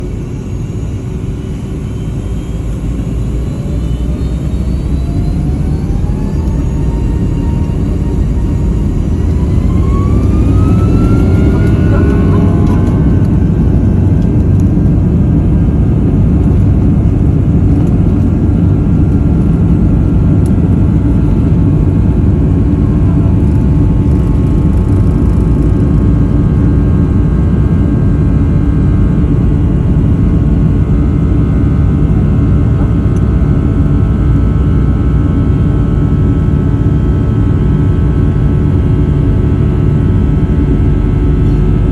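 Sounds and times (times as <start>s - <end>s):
jet engines spooling up: 0.0s - 27.2s.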